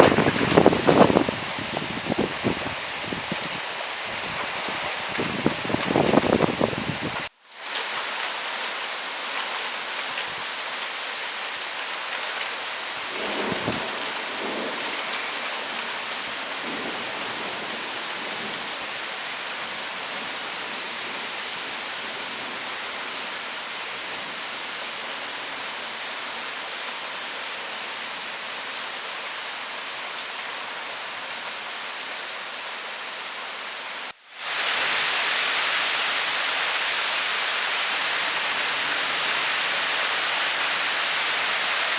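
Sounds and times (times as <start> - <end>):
heavy rain hissing: 0.0 - 41.9
low thunder rumble: 13.0 - 19.0.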